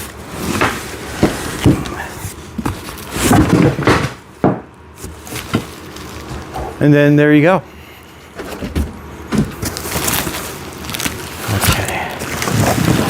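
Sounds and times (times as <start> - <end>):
cardboard scraping and rustling: 0.0 - 4.2, 5.0 - 6.8, 8.3 - 13.0
cardboard box knocks and bumps: 2.6 - 5.7.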